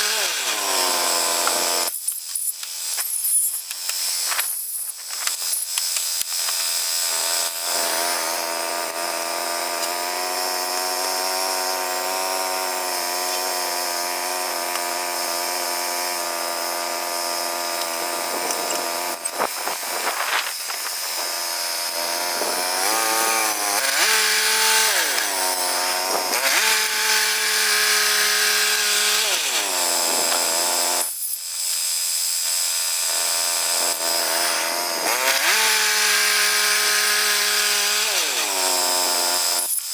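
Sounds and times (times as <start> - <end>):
bandsaw mill gas engine running: 7.1 - 31.1.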